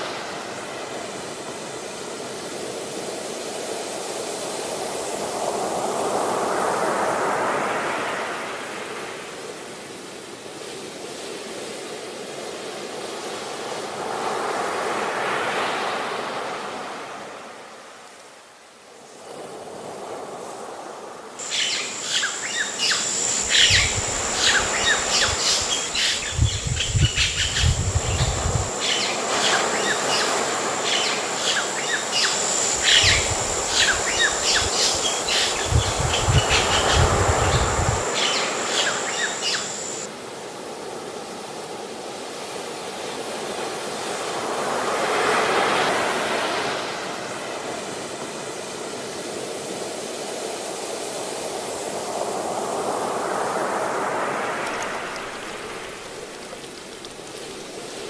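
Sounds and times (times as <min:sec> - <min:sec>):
sea surf: 0:00.0 - 0:18.2, 0:19.2 - 0:58.0
birds chirping rapidly: 0:21.4 - 0:40.0
constant high whine: 0:21.4 - 0:40.1.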